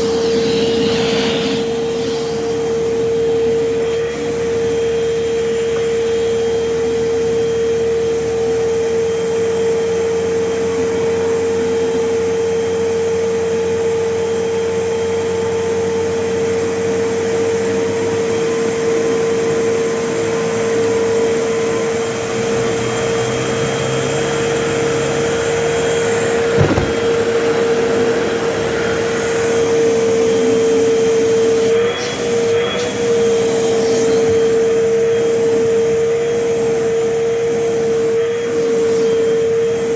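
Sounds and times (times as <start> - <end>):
vacuum cleaner running: 0.0 - 39.9
sharp knock: 26.6 - 27.2.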